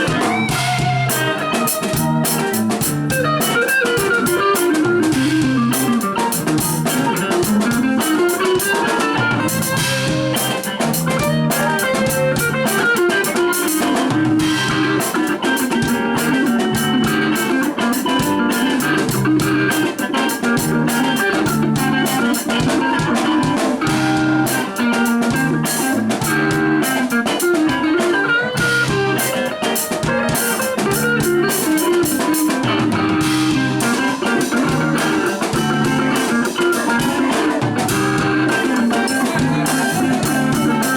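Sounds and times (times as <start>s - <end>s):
guitar: 0.0s - 40.9s
steady drum beat: 0.0s - 40.9s
repeating bass line: 37.8s - 38.6s.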